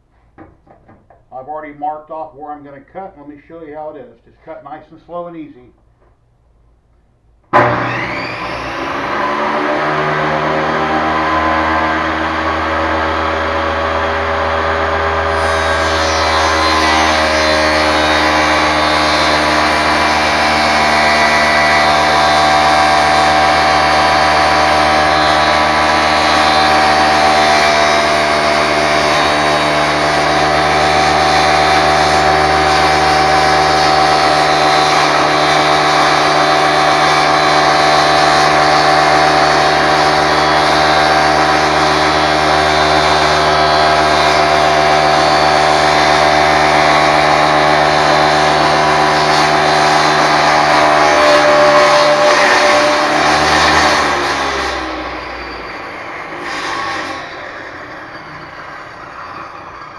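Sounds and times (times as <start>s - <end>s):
table saw cutting plastic sheet: 7.6s - 59.9s.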